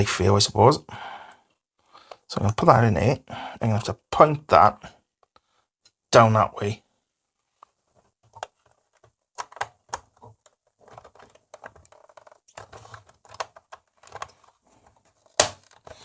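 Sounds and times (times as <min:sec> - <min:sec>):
small parts clicking and rustling: 0:07.5 - 0:16.0.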